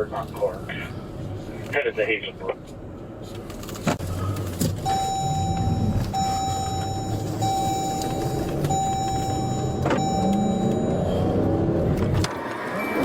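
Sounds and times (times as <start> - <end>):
vehicle engine rumble: 0.0 - 13.0
electronic warning tone: 4.8 - 11.6.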